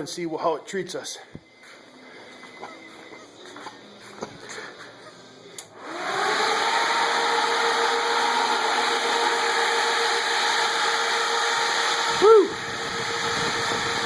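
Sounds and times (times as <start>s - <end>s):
motor whining: 5.7s - 14.0s.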